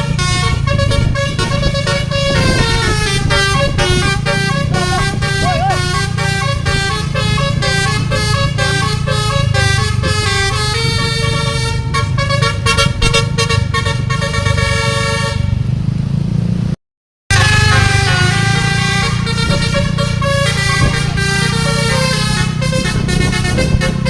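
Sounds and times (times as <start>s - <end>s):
musical bus horn tune: 0.0s - 15.6s, 17.3s - 24.0s
bus engine rumble: 0.0s - 24.0s.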